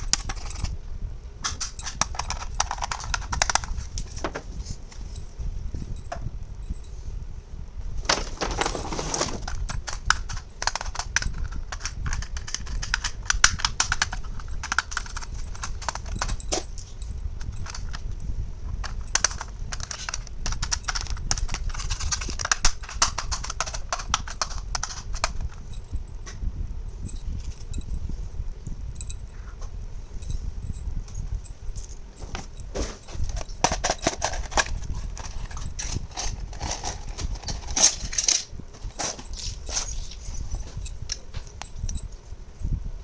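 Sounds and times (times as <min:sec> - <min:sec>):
plastic toy pieces clicking: 0:01.4 - 0:03.8, 0:09.4 - 0:16.6, 0:17.6 - 0:18.0, 0:18.9 - 0:25.6, 0:33.3 - 0:38.5.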